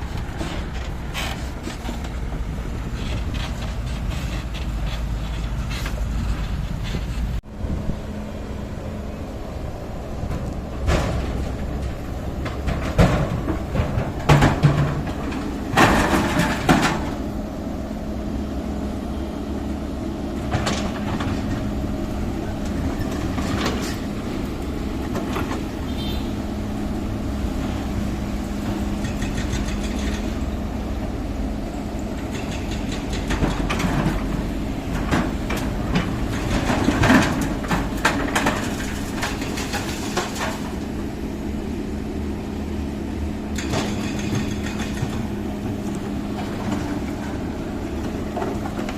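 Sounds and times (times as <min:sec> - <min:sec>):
diesel engine droning: 0:00.0 - 0:48.9
metal knocks and clanks: 0:10.3 - 0:17.2, 0:28.7 - 0:30.5, 0:43.5 - 0:45.4.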